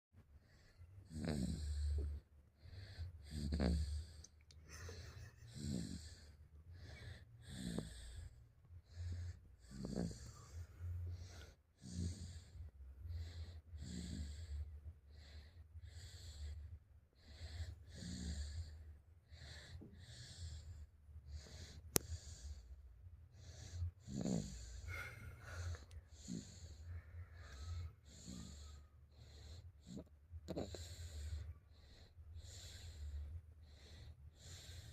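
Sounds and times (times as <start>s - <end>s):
steady low hum: 0.2s - 34.9s
person snoring: 1.0s - 12.6s, 13.2s - 14.6s, 23.5s - 31.4s.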